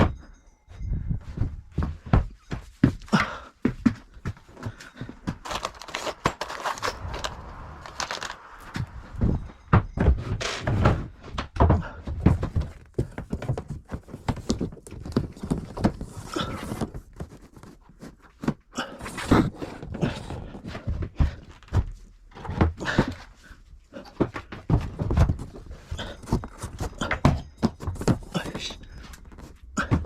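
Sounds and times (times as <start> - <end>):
quiet scraping: 5.5 - 10.8.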